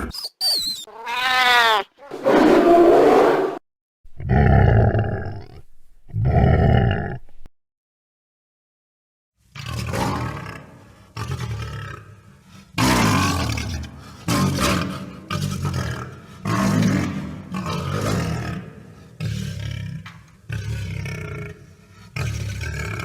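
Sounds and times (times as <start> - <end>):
tiger growling and snarling: 4.1 - 7.5, 9.6 - 23.0.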